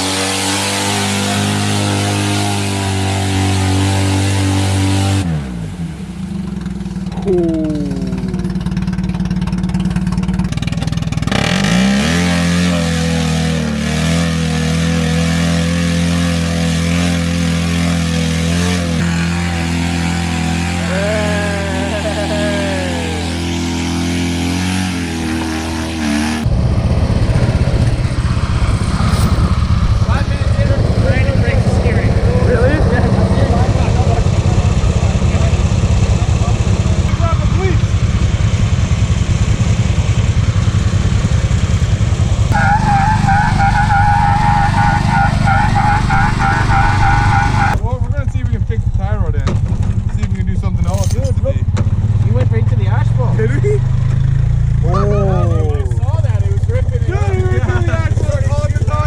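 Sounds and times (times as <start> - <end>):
rough fast-pulsing engine: 0.0 - 4.6, 5.6 - 59.0
small engine running: 6.3 - 59.0
wavering higher sound: 7.1 - 9.6.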